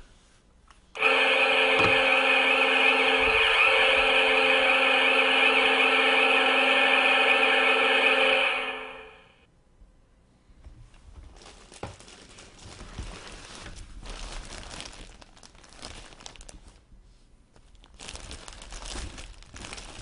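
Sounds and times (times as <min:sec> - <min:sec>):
multi-tone horn blast: 0:01.0 - 0:09.4.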